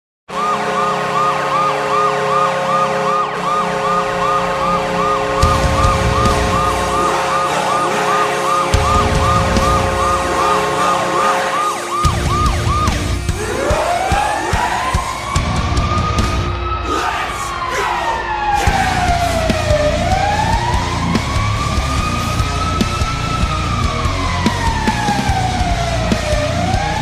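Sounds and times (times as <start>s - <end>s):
hockey goal horn: 0.3s - 11.9s
siren-like whoop: 0.3s - 27.0s.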